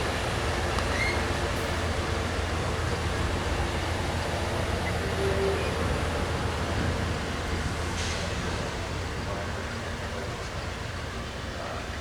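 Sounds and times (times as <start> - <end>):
train rumbling on tracks: 0.0 - 12.0.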